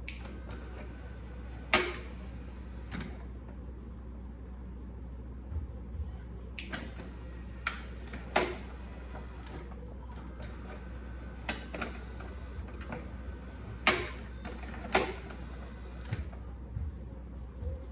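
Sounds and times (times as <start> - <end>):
steady low hum: 0.0 - 17.9
sharp relay clicks: 6.6 - 8.7.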